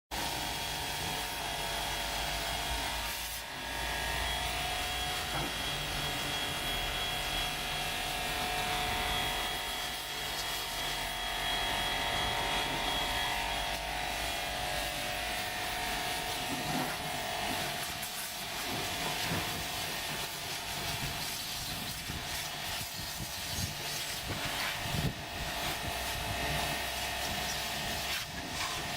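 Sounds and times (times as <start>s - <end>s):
pressure washer motor humming: 0.2s - 28.9s.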